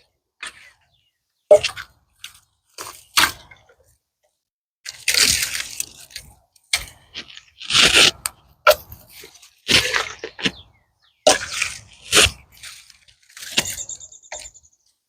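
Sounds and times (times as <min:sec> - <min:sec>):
dead branches crunching and cracking: 0:04.8 - 0:13.9.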